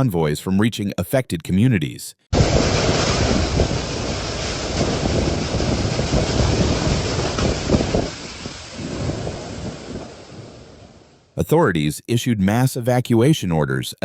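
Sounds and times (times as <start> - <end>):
storm wind buffeting microphone: 2.4 - 11.4.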